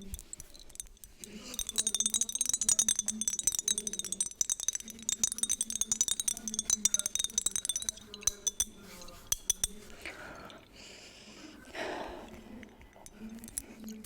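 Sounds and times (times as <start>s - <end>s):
tapping on glass bottle: 0.0s - 10.6s.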